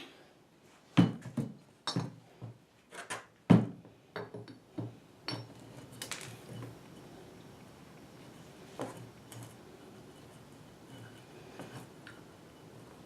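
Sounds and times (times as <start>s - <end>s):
light metal knocks and clinks: 5.2s - 6.8s.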